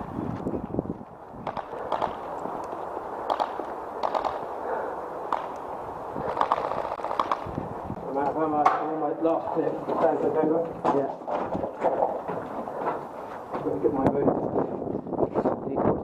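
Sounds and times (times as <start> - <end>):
airsoft gun bursts: 3.2 - 4.5, 6.2 - 7.5.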